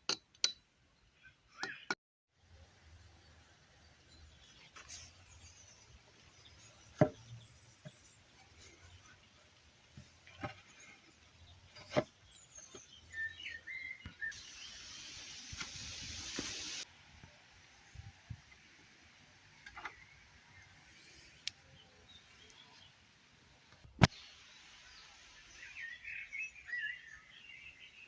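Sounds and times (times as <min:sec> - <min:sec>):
sharp knocks on timber: 0:07.0 - 0:07.2
bird chirps: 0:10.7 - 0:15.1, 0:24.9 - 0:28.0
steady hiss: 0:14.3 - 0:19.6, 0:20.5 - 0:26.4.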